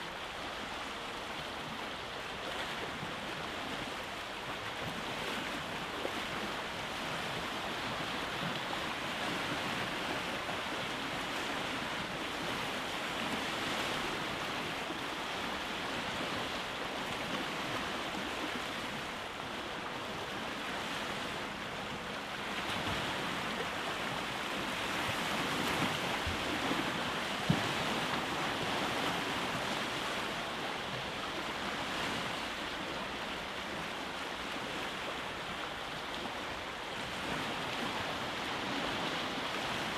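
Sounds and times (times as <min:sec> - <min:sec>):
waves breaking on rocks: 0:19.6 - 0:33.0.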